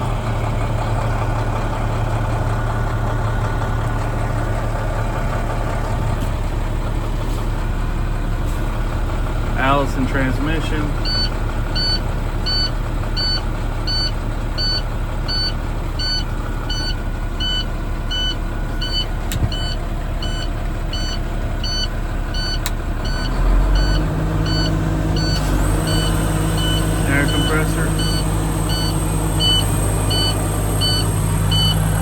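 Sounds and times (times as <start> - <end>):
diesel engine idling: 0.0 - 32.0
warning chime beeping: 10.6 - 32.0.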